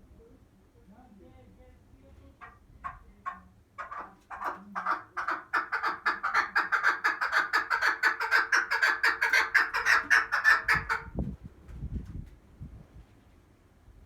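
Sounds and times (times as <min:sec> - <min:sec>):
partridge clucking call: 0:02.4 - 0:11.1.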